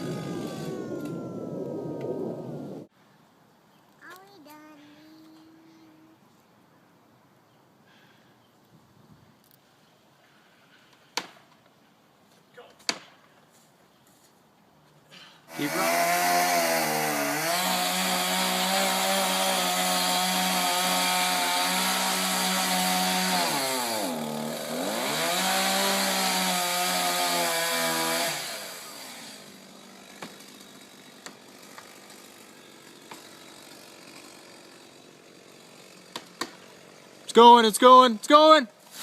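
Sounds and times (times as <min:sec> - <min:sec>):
chainsaw cutting into tree: 0:00.0 - 0:02.9, 0:15.5 - 0:37.3.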